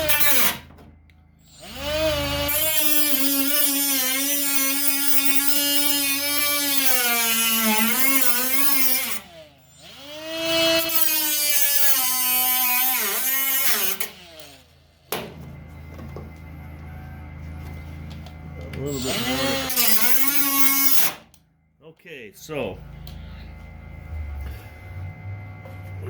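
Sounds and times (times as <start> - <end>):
cut-off tool cutting sheet metal: 0.0 - 0.6, 1.6 - 9.4, 10.1 - 14.6, 18.9 - 21.2.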